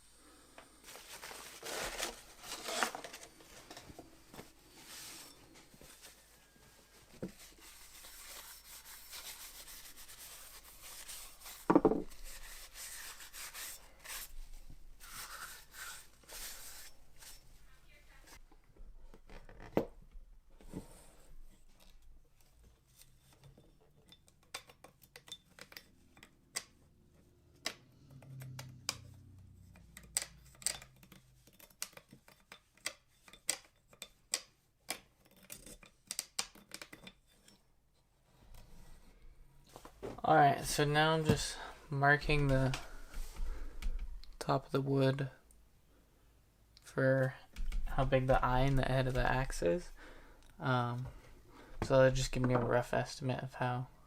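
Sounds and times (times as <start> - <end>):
hand tool scraping: 4.7 - 14.4, 15.0 - 17.5.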